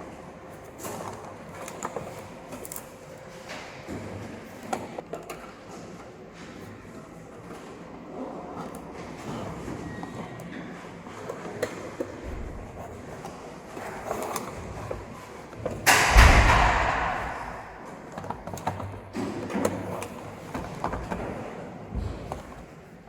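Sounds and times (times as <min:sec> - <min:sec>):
handling knocks and clicks: 0:11.3 - 0:22.8.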